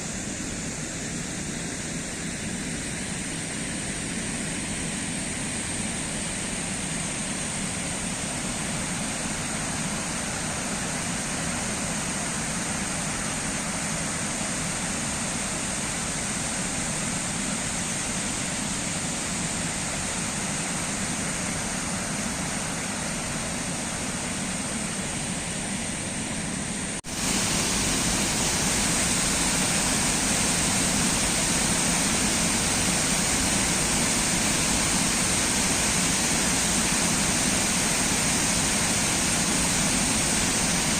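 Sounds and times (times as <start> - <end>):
waterfall rushing: 27.1 - 40.9.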